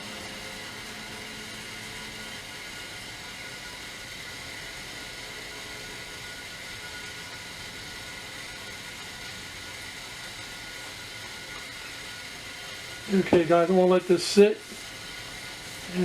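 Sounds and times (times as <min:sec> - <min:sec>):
steady background hiss: 0:08.0 - 0:16.0.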